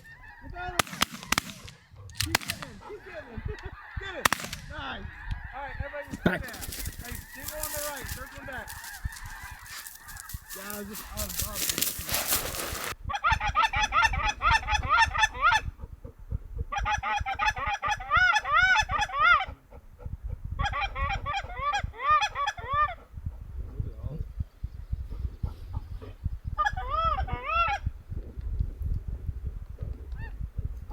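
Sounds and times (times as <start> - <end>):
geese calling: 0.0 - 15.6
wind noise: 0.0 - 30.9.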